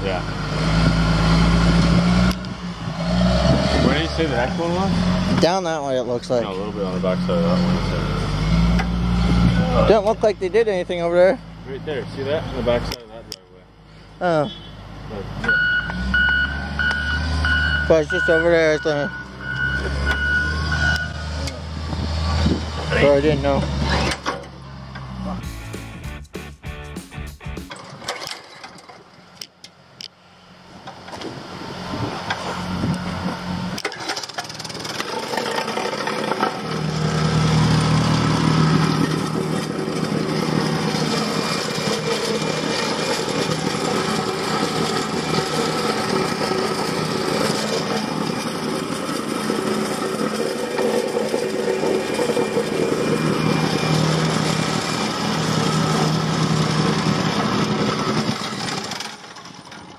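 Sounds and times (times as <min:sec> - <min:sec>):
small engine running under load: 0:32.3 - 0:59.9.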